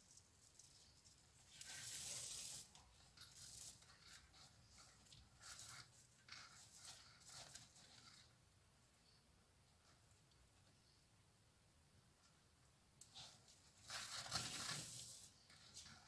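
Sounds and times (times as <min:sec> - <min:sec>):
paper yarn rustling and scraping: 0:00.0 - 0:08.4, 0:13.1 - 0:16.0.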